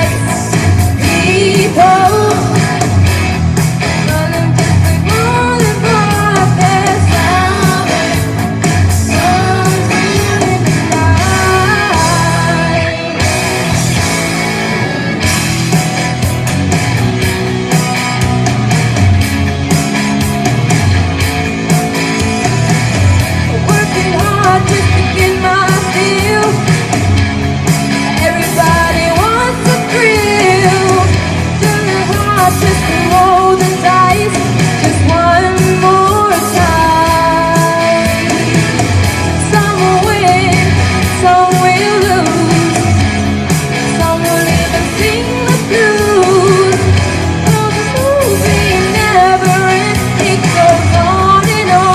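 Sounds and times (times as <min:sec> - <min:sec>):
lead singer singing: 0:00.0 - 0:14.0, 0:23.4 - 0:27.2, 0:28.0 - 0:51.9
loud rock music: 0:00.0 - 0:51.9.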